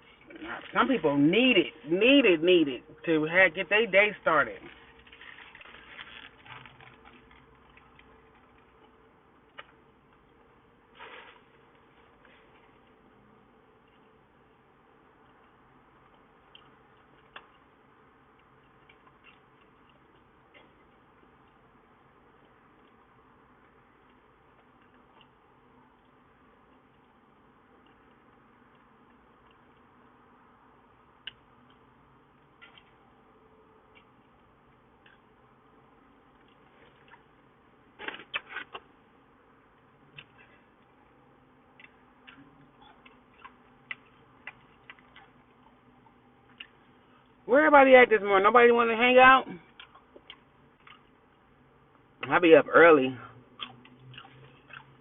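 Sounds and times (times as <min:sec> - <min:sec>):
chewing and mouth clicks: 0:49.7 - 0:51.1, 0:53.5 - 0:55.0.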